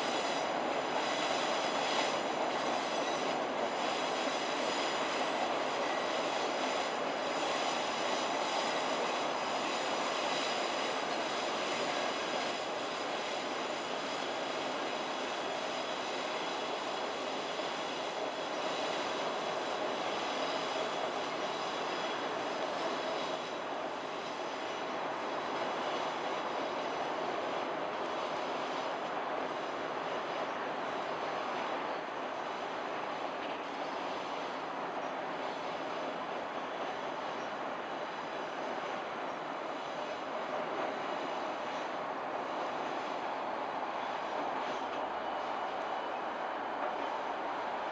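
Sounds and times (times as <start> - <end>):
diesel locomotive engine: 0.0 - 47.9
faint high whine: 0.0 - 47.9
wheels rushing on rails: 0.0 - 47.9.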